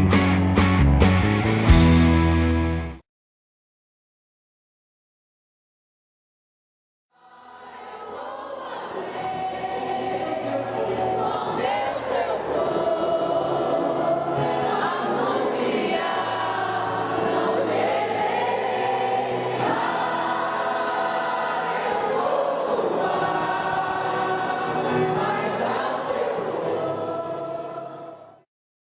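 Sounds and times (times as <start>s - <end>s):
choir singing sustained chords: 7.2s - 28.5s.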